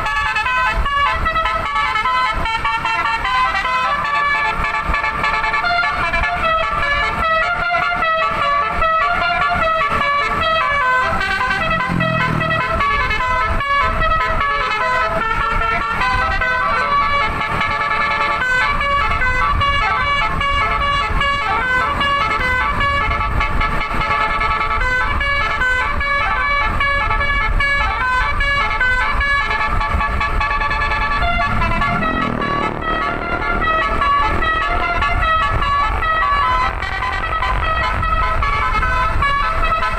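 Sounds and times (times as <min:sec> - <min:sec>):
multi-tone bus horn tune: 0:00.0 - 0:39.9
low rumble: 0:30.0 - 0:37.1.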